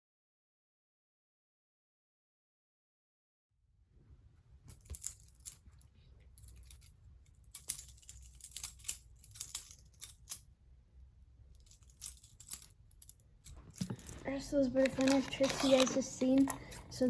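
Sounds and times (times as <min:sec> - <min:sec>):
butterfly knife handles clacking: 0:11.6 - 0:17.0.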